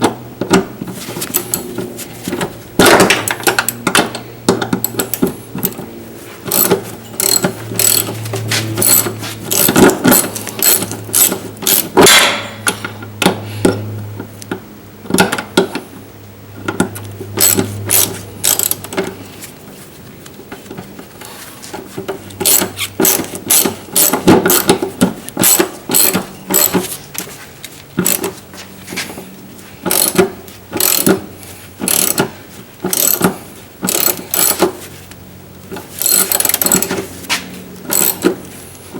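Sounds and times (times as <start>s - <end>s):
low steady hum: 0.0s - 38.9s
ratchet wrench clicking: 4.8s - 5.8s, 6.5s - 8.2s, 8.8s - 12.8s, 17.0s - 19.0s, 22.4s - 26.8s, 28.0s - 28.3s, 29.9s - 31.2s, 31.8s - 32.3s, 32.9s - 34.7s, 36.0s - 37.0s, 37.8s - 38.4s.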